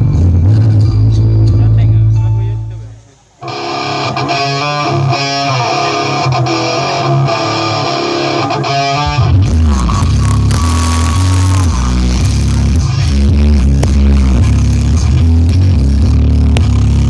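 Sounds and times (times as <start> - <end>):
guitar-led music over bass: 0.0 - 17.0
heavy bass music track: 0.0 - 17.0.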